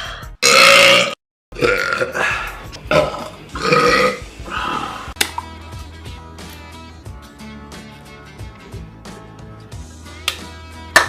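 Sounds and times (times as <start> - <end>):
loud burping: 0.4 - 5.1.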